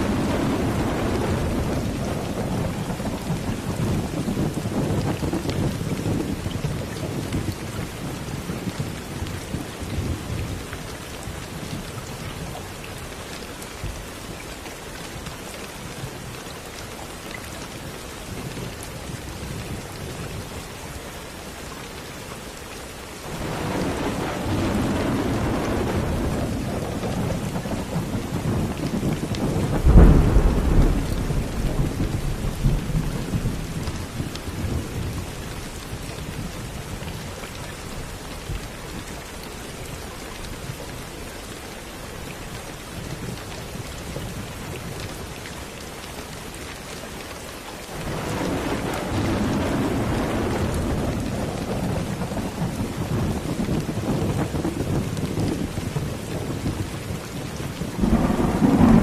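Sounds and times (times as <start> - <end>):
thunder rumbling: 0.0 - 10.8, 23.3 - 36.8, 47.9 - 59.0
steady rain falling: 0.0 - 59.0.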